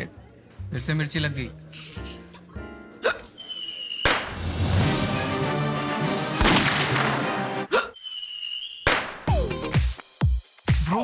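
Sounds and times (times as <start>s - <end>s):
dramatic sound-effect music: 4.4s - 7.7s
heavy boom: 6.4s - 7.2s.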